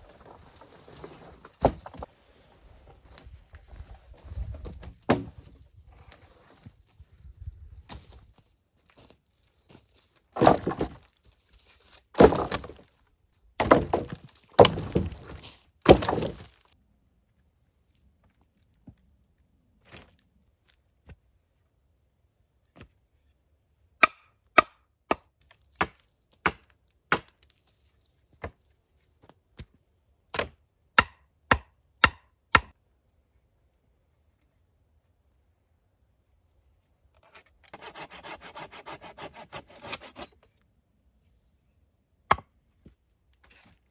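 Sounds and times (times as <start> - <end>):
rasping saw strokes on wood: 37.2 - 40.4.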